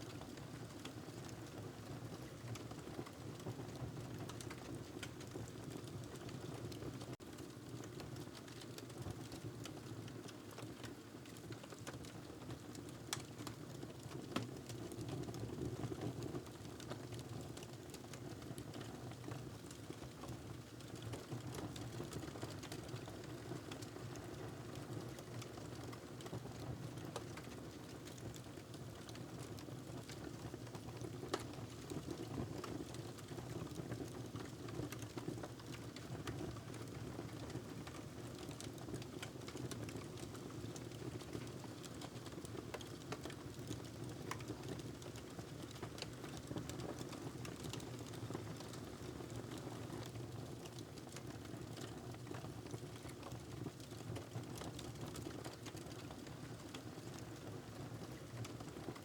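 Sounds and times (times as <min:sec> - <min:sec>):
wood fire crackling: 0:30.0 - 0:31.5, 0:37.7 - 0:49.6.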